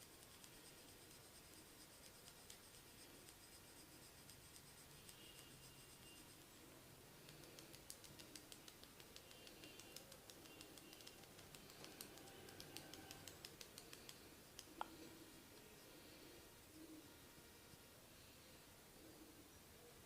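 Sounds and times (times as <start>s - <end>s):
fingers crackling on hair and skin: 7.2s - 15.7s.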